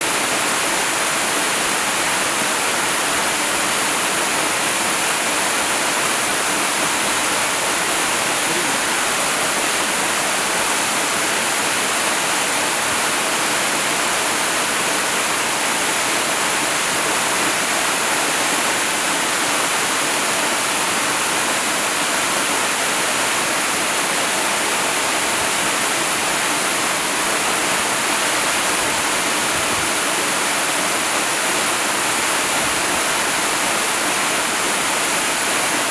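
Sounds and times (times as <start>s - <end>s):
waterfall rushing: 0.0s - 22.4s.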